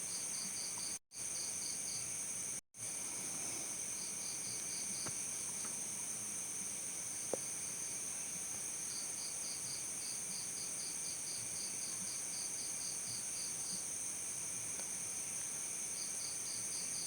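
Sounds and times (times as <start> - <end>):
cricket chirping: 0.0 - 17.0.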